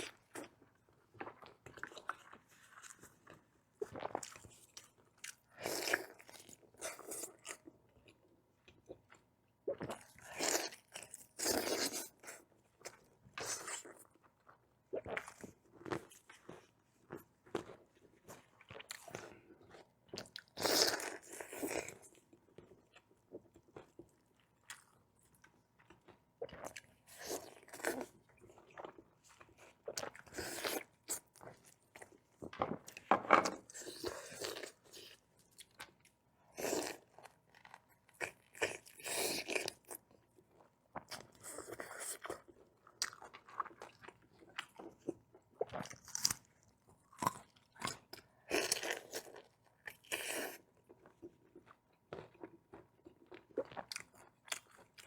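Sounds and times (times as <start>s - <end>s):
person crunching and chewing: 41.0s - 55.0s.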